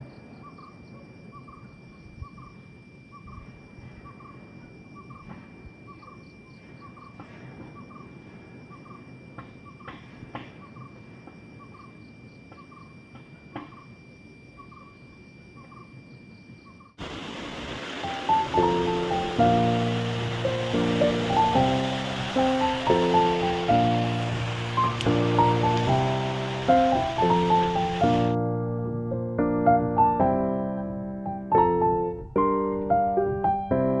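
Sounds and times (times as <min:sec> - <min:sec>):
steady high-pitched tone: 0:00.0 - 0:10.0, 0:10.7 - 0:28.4
scattered chirps: 0:00.2 - 0:17.0
music: 0:18.0 - 0:34.0.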